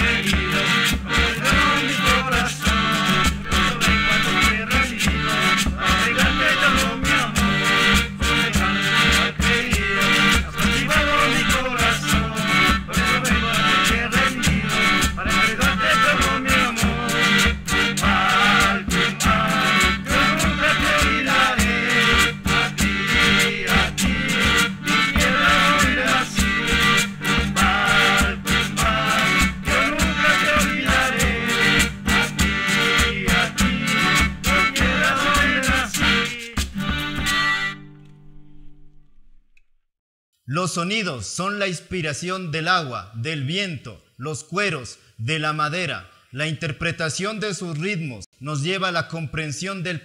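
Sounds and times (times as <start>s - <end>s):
quick percussion rhythm: 0.0s - 37.4s
strummed strings: 33.6s - 39.4s.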